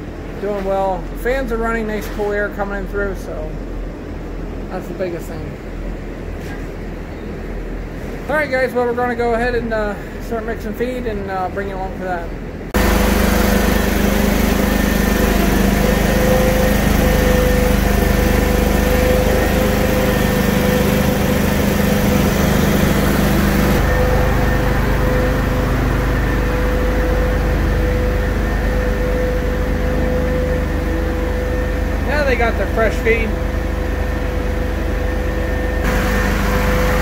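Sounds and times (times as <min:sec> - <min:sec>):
small engine running: 0:12.8 - 0:37.0.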